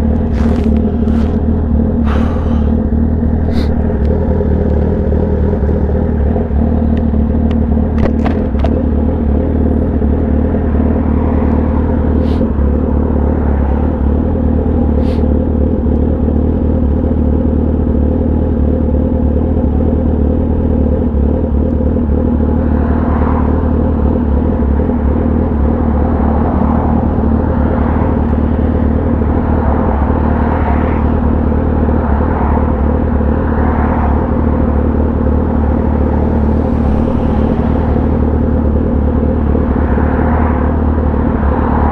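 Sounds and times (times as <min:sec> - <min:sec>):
motorcycle engine running steadily: 0:00.0 - 0:41.9.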